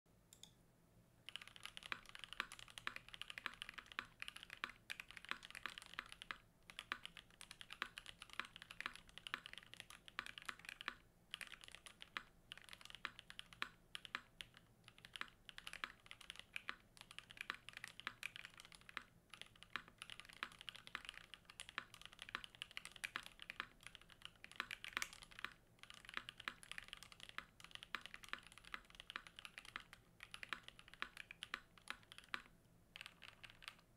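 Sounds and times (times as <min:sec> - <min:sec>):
mechanical keyboard typing: 0:01.3 - 0:33.9.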